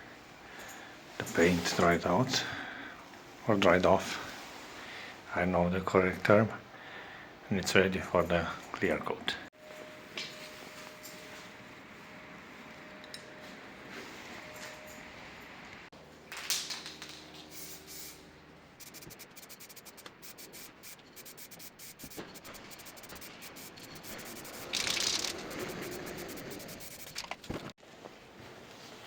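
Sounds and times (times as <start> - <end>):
aerosol spray hiss: 18.8 - 24.5
spray can ball rattling: 18.8 - 27.4.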